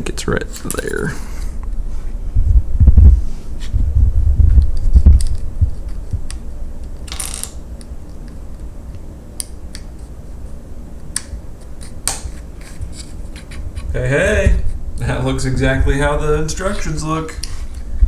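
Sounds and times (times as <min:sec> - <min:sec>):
low thumps: 0:01.6 - 0:06.3, 0:13.9 - 0:15.0.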